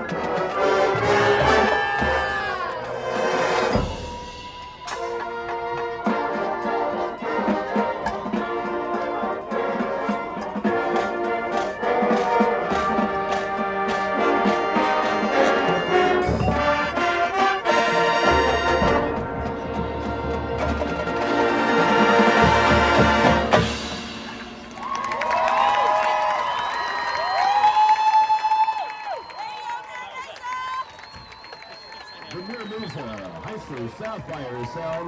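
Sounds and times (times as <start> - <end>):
low brass: 0.0 - 25.4
trumpets and trombones: 0.0 - 25.7
marching drums: 0.0 - 27.8, 30.9 - 35.0.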